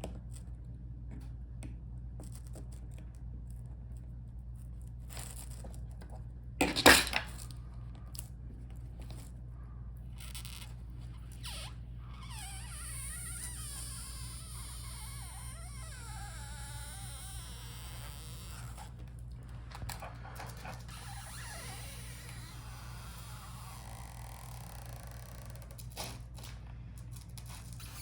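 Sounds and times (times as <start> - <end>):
steady low hum: 0.0 - 28.0
adhesive strip squeaking: 10.2 - 19.0, 20.9 - 26.2, 27.5 - 28.0.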